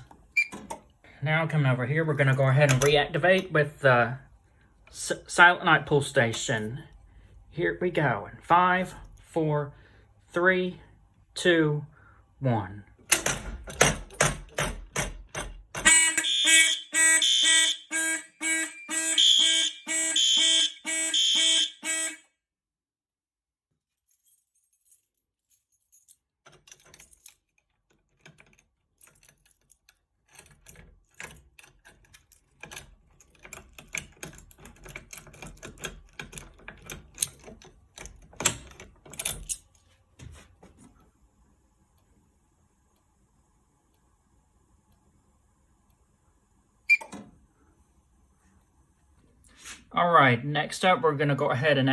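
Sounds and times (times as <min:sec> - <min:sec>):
fire alarm horns pulsing: 0:15.8 - 0:22.4.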